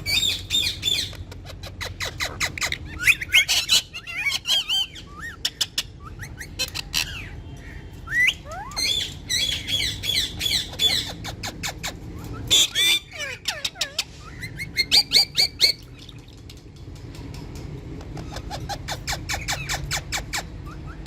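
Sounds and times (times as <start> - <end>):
parrots squawking and chattering: 0.0 - 21.0.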